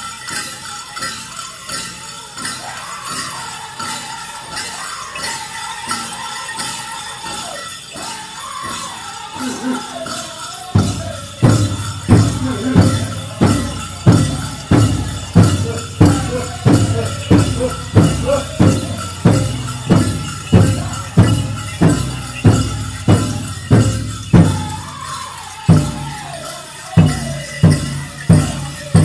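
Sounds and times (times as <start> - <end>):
drum group singing: 0.2 - 29.0
large drum beating: 10.8 - 24.8.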